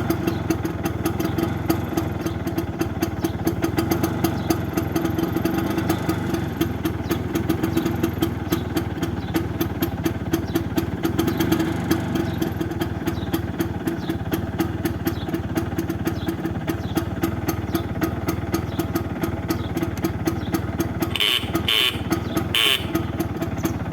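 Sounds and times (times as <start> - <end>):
scooter two-stroke engine running: 0.0 - 23.9
short high-pitched bursts: 21.1 - 23.0.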